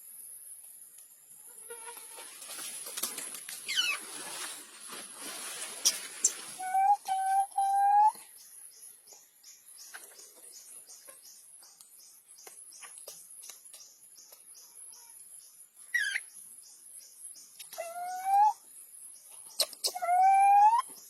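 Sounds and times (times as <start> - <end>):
baby monkey squealing: 19.6 - 20.9.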